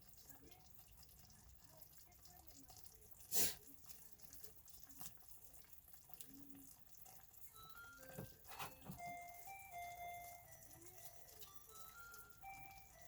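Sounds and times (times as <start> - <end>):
background music: 7.6 - 13.0.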